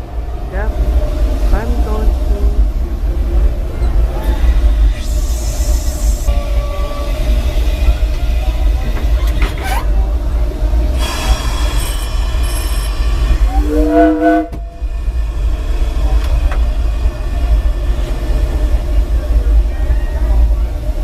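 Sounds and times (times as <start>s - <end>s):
steam locomotive rumble: 0.0s - 21.0s
steam whistle blast: 13.5s - 14.7s.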